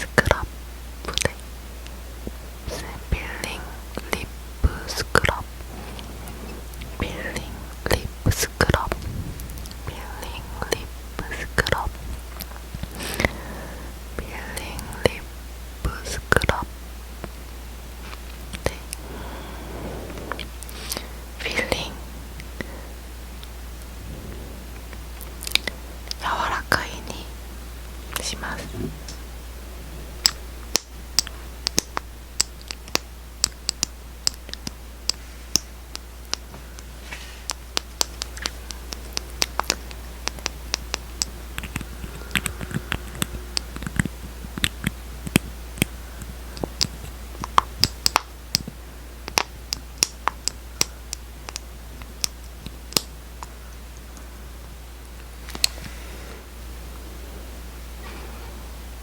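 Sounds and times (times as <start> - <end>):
steady low hum: 0.0 - 59.0.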